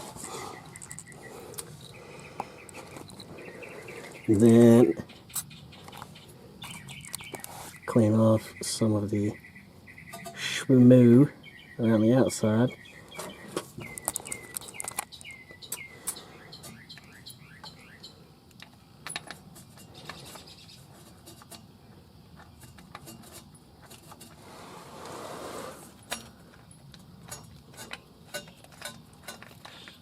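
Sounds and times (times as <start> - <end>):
bird chirping: 0.2 - 18.4, 19.8 - 20.9
clicks and taps of metal parts: 13.2 - 17.8, 18.5 - 20.5, 26.0 - 30.0
rubbing sound: 23.0 - 26.0.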